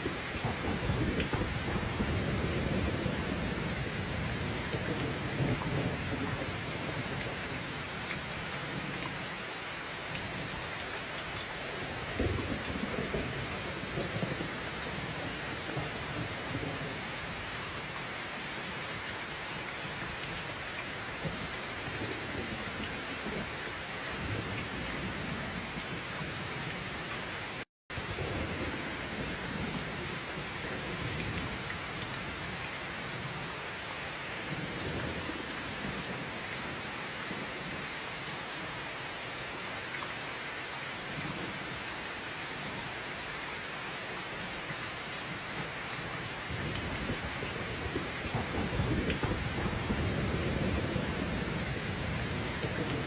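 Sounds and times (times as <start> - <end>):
heavy rain: 0.0 - 53.0
distant thunder rolling: 46.5 - 53.0.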